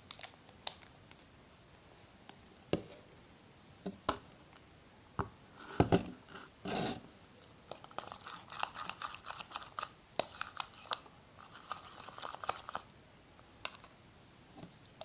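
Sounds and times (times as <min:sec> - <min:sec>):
spoon stirring sticky slime: 0:07.4 - 0:12.9.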